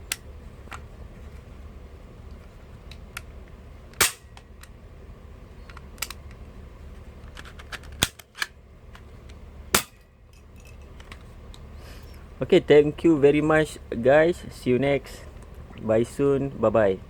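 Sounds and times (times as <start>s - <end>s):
airsoft pistol shots: 4.0s - 4.4s, 9.7s - 10.0s.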